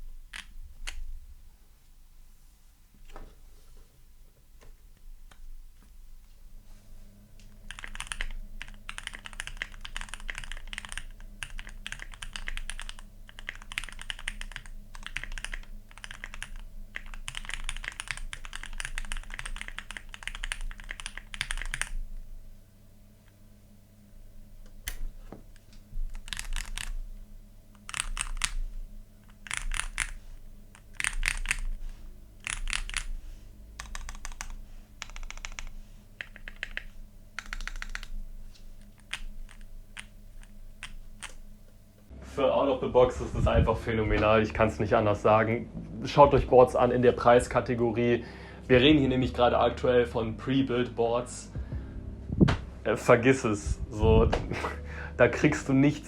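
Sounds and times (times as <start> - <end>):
mechanical keyboard typing: 0.1 - 1.1, 7.5 - 22.2, 26.0 - 27.1, 27.8 - 33.2, 33.8 - 41.8.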